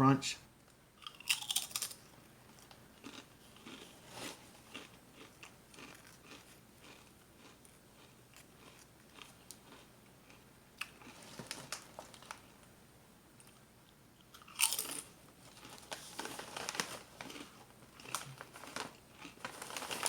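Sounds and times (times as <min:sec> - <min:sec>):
potato chips crunching: 0:01.0 - 0:12.4, 0:14.3 - 0:20.0.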